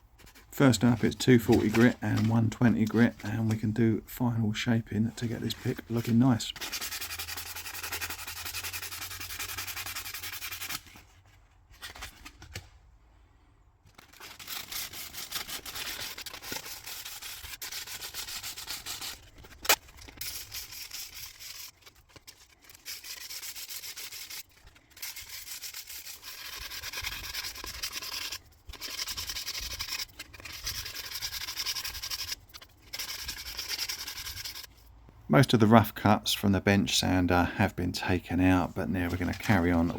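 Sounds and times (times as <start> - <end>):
sandpaper rasping on plastic: 5.6 - 11.0, 14.0 - 34.7.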